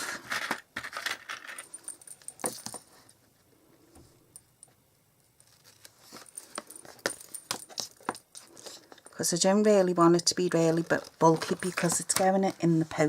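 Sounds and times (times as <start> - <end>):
paper rustling: 5.4 - 9.0.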